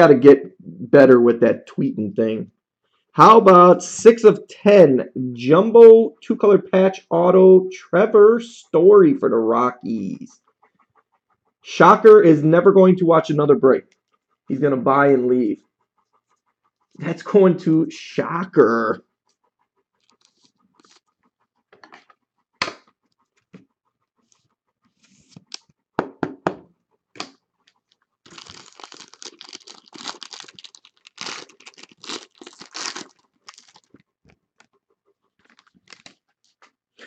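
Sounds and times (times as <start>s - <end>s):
wrapper rustling and crinkling: 28.2s - 34.0s, 35.4s - 36.2s.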